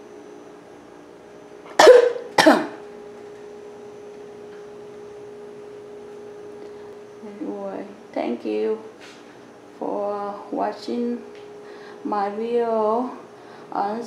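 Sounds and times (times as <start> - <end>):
person coughing: 1.7 - 2.8.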